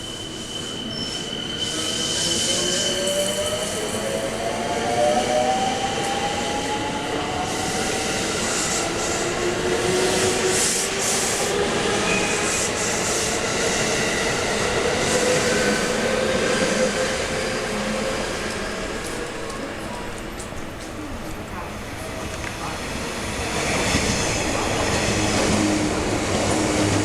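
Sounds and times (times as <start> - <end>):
faint wheel squeal: 0.0 - 3.1
wheels rumbling on rail: 9.2 - 27.0.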